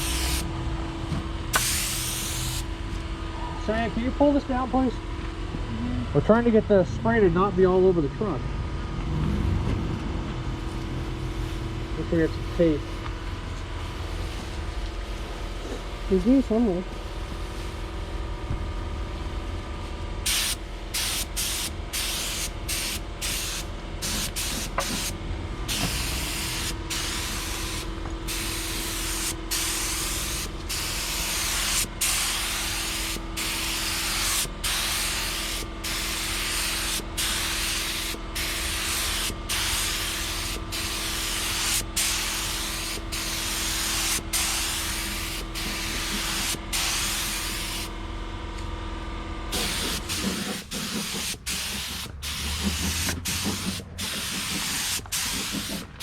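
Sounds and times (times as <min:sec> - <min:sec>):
spray gun hissing: 0:00.0 - 0:00.5, 0:01.6 - 0:02.7, 0:20.2 - 0:47.9, 0:49.5 - 0:56.0.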